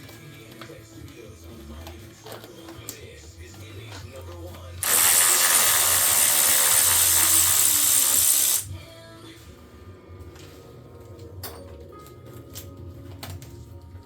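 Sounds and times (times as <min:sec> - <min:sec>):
pneumatic air tool hissing: 0:04.8 - 0:08.7.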